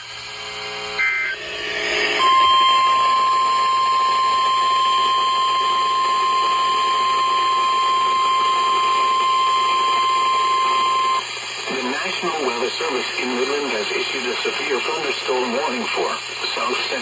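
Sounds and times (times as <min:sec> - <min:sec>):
steady single-pitch alert tone: 0:00.9 - 0:11.2
warbling digital data tones: 0:00.9 - 0:11.2.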